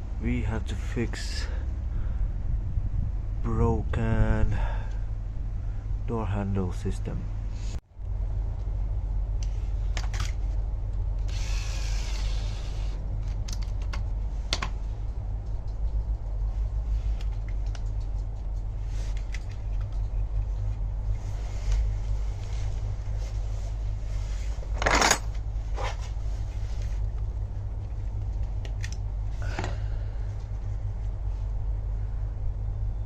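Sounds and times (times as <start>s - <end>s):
steady low hum: 0.0s - 33.0s
clatter: 24.7s - 26.1s.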